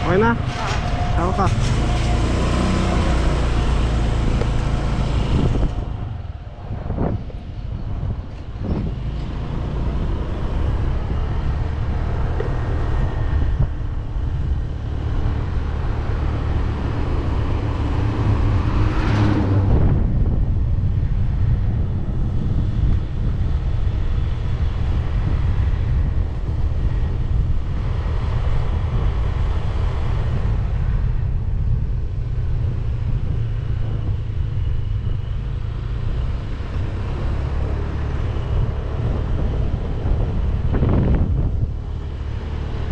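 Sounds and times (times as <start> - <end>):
loud whoosh: 0.0 - 22.5
wind and road noise: 0.0 - 42.9.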